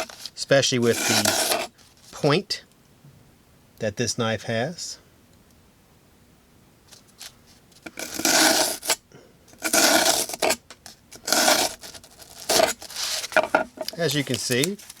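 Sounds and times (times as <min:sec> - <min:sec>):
knife slicing cardboard: 0:00.8 - 0:01.7, 0:07.9 - 0:09.0, 0:09.6 - 0:10.6, 0:11.2 - 0:13.5.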